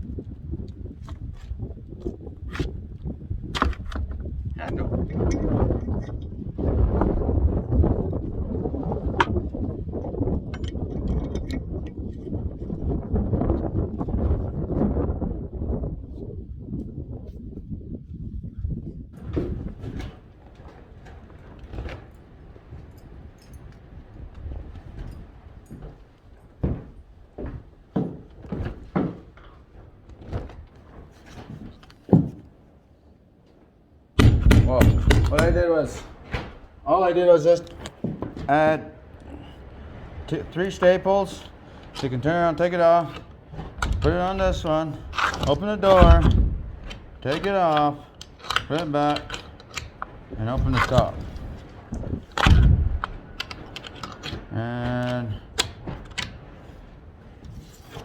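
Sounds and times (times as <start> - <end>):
door latch clicks and knocks: 34.2 - 35.6
storm door latch knocking: 34.2 - 36.6, 45.9 - 47.0.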